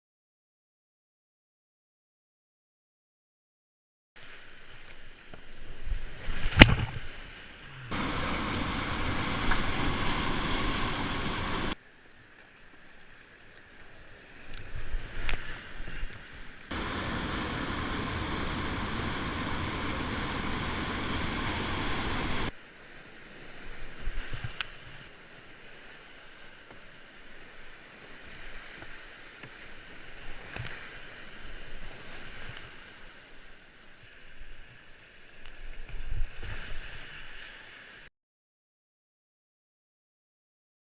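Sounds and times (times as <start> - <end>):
water splashing: 4.3 - 11.8, 16.7 - 22.5
wind on microphone: 5.6 - 11.8, 16.7 - 22.5
river rapids roaring: 7.8 - 11.8, 16.7 - 22.5.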